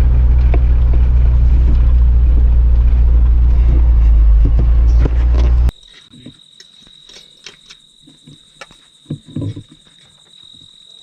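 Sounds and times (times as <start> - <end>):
vehicle engine rumble: 0.0 - 5.7.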